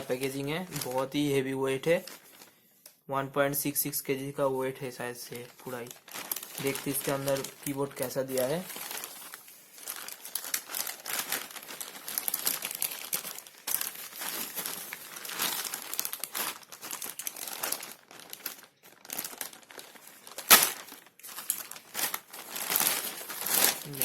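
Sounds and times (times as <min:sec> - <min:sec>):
packaging crinkling and rustling: 0:00.0 - 0:02.6, 0:05.3 - 0:24.0
loud sharp crackle: 0:08.7 - 0:24.0.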